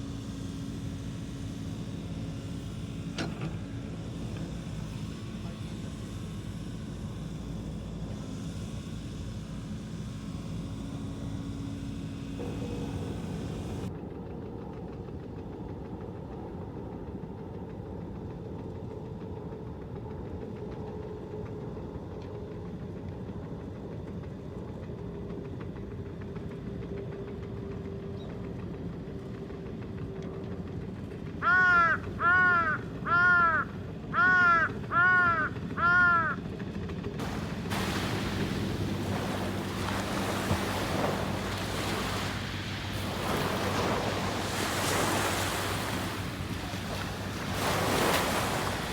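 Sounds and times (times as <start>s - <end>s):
crow cawing: 31.4s - 36.4s
low steady rumble: 37.2s - 48.9s
surf rushing: 37.2s - 48.9s.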